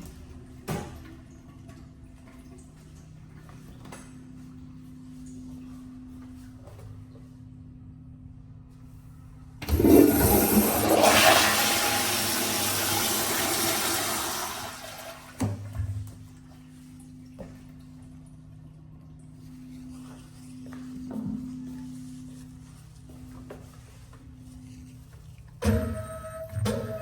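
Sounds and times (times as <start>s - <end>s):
toilet flushing: 9.6s - 17.7s.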